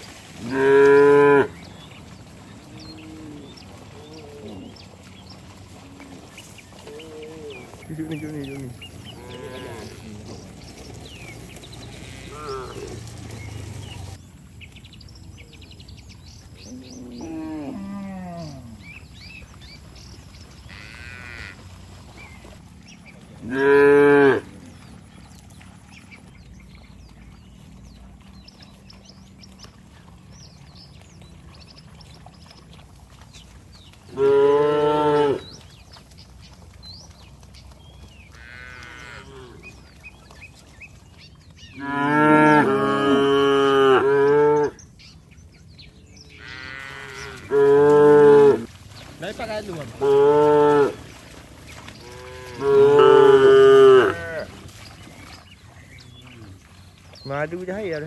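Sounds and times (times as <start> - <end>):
cattle mooing: 0.4 - 1.8, 2.6 - 4.8, 5.8 - 10.4, 11.9 - 13.6, 16.6 - 18.9, 20.5 - 21.6, 23.4 - 24.7, 34.1 - 35.6, 38.3 - 39.8, 41.7 - 44.8, 46.3 - 48.7, 49.7 - 51.2, 52.0 - 54.7.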